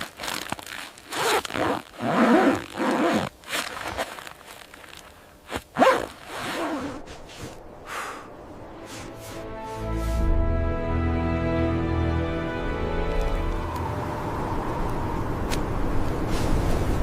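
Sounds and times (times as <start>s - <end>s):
zipper being pulled: 0.0s - 7.6s.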